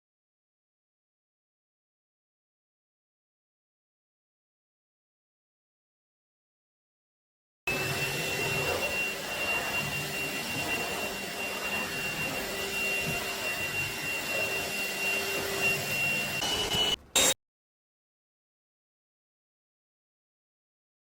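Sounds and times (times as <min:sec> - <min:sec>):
stick vacuum running: 0:07.7 - 0:17.4.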